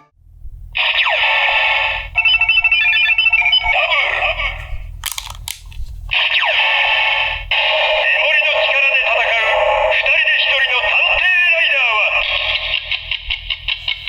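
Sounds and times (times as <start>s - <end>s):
sharp toy clicks: 5.0s - 5.7s.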